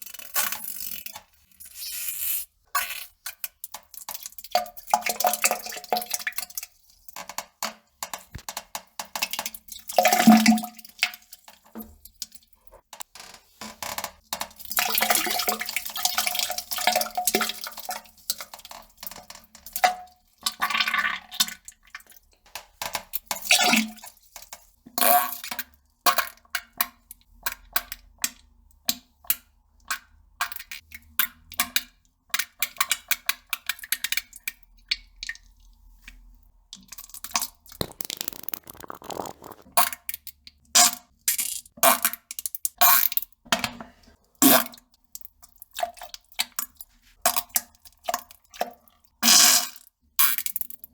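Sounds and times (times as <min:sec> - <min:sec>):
wet fart and defecation sounds: 0:37.8 - 0:39.8.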